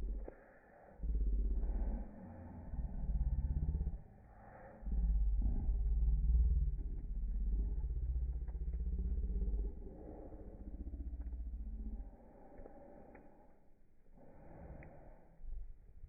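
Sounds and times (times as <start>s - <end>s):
fire low rumble: 1.0s - 16.0s
faint clicks: 5.6s - 16.0s.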